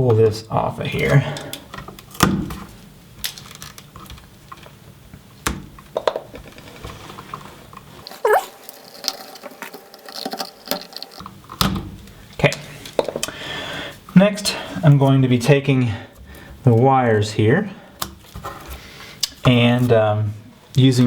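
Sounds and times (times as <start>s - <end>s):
brief squeak: 8.2s - 8.5s.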